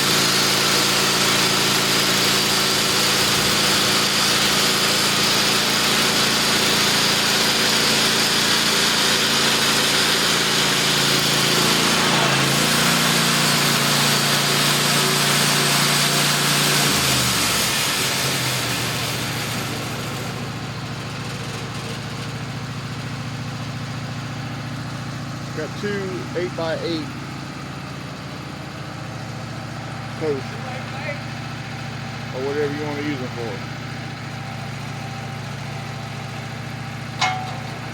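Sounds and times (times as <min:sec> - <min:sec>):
sawmill engine running: 0:00.0 - 0:37.9.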